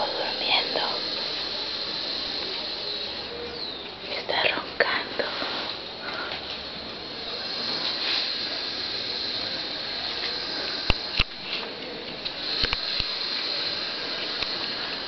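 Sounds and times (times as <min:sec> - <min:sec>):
rattling snoring: 0:00.0 - 0:15.0
sharp clicks: 0:10.2 - 0:13.5.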